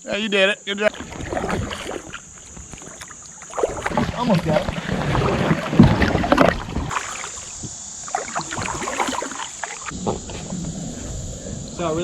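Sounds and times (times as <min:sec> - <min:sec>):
kayak paddles splashing in water: 0:00.8 - 0:10.5.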